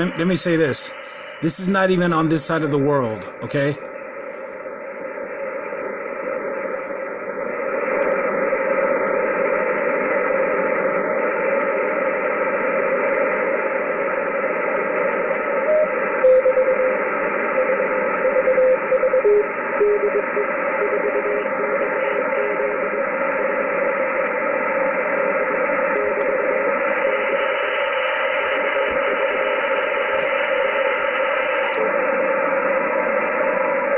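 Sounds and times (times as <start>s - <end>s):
radio static hiss: 0.0s - 33.9s
morse code beeps: 15.6s - 17.0s, 17.6s - 20.3s.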